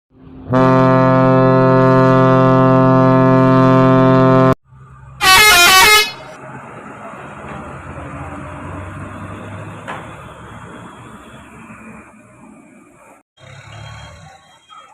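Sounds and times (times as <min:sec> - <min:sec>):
passing vehicle engine and road noise: 0:00.1 - 0:00.5, 0:01.3 - 0:14.9
multi-tone air horn chord: 0:00.4 - 0:04.6, 0:05.2 - 0:06.3
rapid warbling horn burst: 0:00.5 - 0:04.6, 0:05.2 - 0:06.3.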